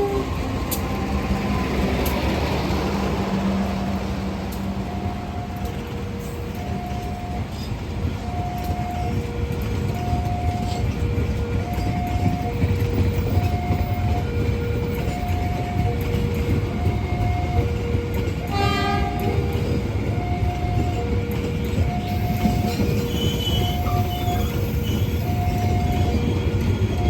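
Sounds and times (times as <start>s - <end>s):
train horn blast: 0.0s - 0.4s, 17.0s - 27.0s
passing train rumble: 0.0s - 27.0s
level-crossing two-tone alarm: 4.8s - 27.0s.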